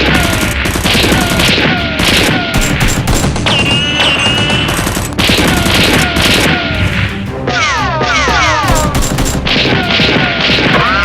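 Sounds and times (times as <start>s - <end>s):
rapid gunfire: 0.0s - 6.8s, 8.6s - 11.0s
action soundtrack music: 0.0s - 11.0s
falling whistling tones: 3.5s - 4.8s.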